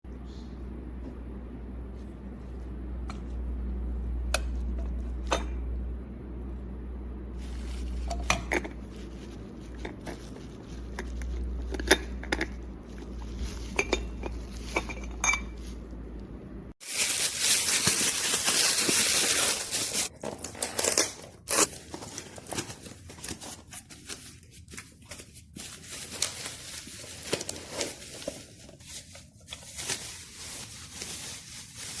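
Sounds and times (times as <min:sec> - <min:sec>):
metal pot parts clinking: 0:13.2 - 0:15.7.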